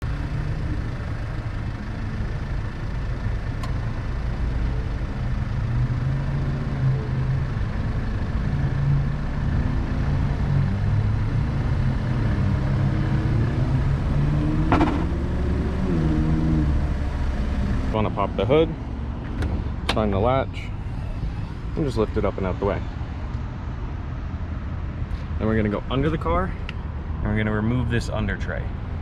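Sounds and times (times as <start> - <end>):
car engine running: 0.0 - 23.0
knock: 14.7 - 15.1.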